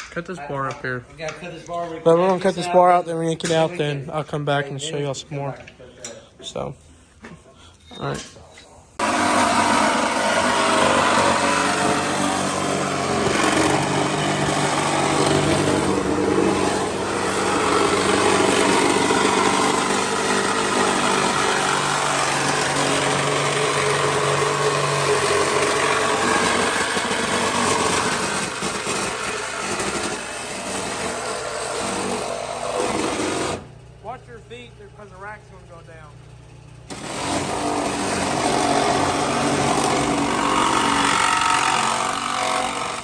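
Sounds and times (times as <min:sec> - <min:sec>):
power tool cutting metal bar: 0:09.0 - 0:33.8, 0:36.9 - 0:43.0.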